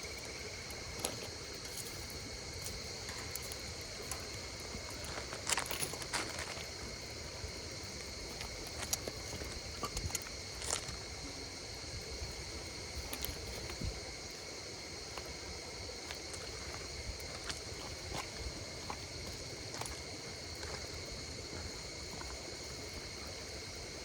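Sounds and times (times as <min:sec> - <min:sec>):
insects singing: 0:00.0 - 0:24.0
wood fire crackling and popping: 0:00.1 - 0:11.0.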